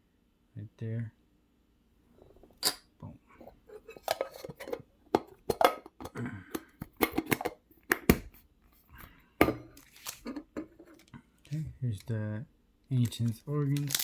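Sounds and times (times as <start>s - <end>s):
card packs and plastic box handled: 8.9s - 12.1s, 12.9s - 14.0s.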